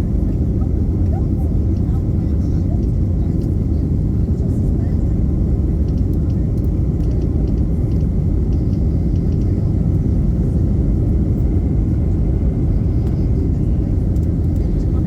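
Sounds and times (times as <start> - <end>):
airplane cabin engine rumble: 0.0 - 15.0
faint light ticks: 5.9 - 9.5.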